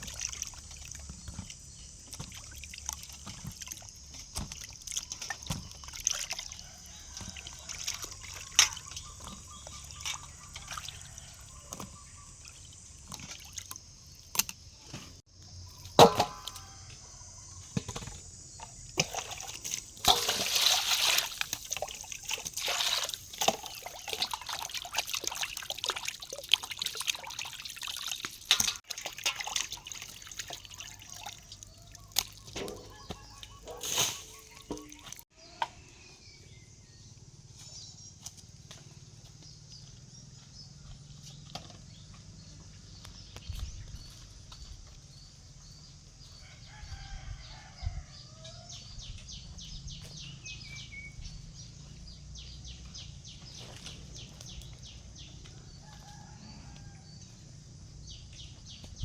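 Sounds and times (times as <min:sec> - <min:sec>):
water trickling and splashing: 0:00.0 - 0:14.5, 0:18.6 - 0:35.3.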